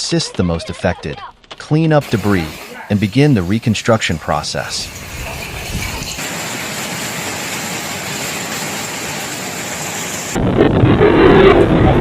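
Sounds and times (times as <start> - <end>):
heavy rain hissing: 2.0 - 10.4
storm rushing: 2.0 - 12.0.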